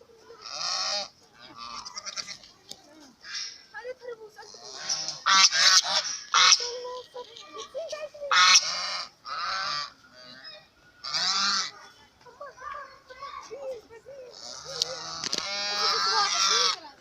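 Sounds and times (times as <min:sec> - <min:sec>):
geese honking: 0:00.3 - 0:02.5, 0:03.2 - 0:03.6, 0:04.4 - 0:12.0, 0:14.2 - 0:17.0.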